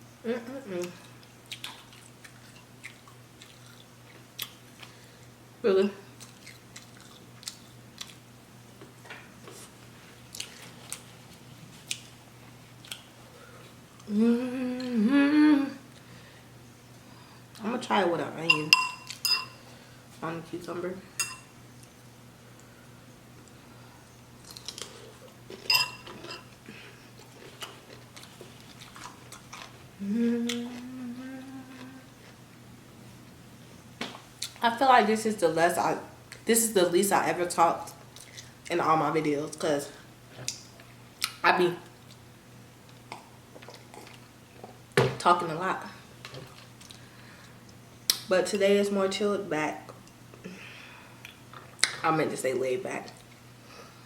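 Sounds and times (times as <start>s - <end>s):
person humming mmm: 0.2s - 1.1s, 14.0s - 15.9s, 30.0s - 32.3s
person chewing food: 0.9s - 5.1s, 6.2s - 8.2s, 9.4s - 14.1s, 24.4s - 32.4s, 42.9s - 44.8s
crunchy chewing: 6.2s - 8.2s, 24.4s - 29.9s.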